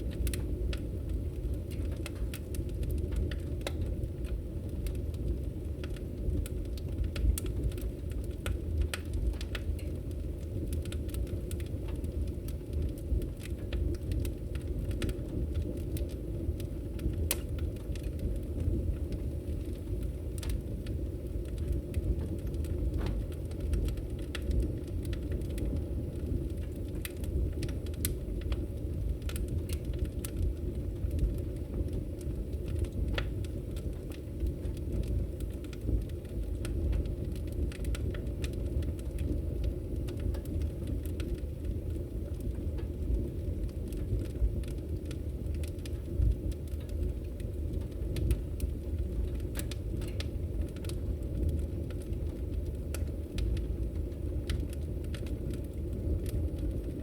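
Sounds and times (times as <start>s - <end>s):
fire crackling and popping: 0.0s - 57.0s
fire flames rumbling: 0.0s - 57.0s.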